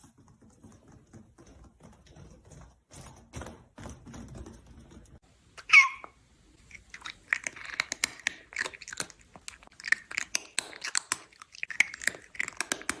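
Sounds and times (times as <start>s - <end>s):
animal chewing food: 6.6s - 13.0s.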